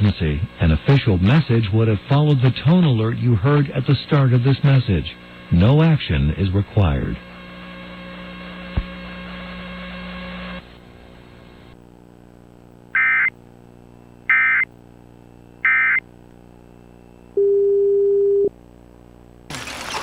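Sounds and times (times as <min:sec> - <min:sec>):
low electrical hum: 0:00.0 - 0:20.0
digital tone bursts: 0:13.0 - 0:13.3, 0:14.3 - 0:14.7, 0:15.6 - 0:16.0.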